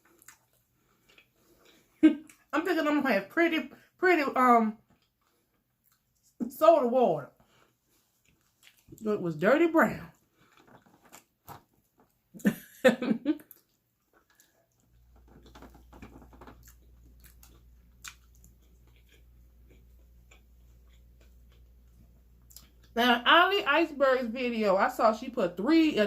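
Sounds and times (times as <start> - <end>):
person chewing: 0.0 - 2.5, 4.9 - 6.4, 7.4 - 9.0, 10.1 - 12.2, 13.4 - 23.0.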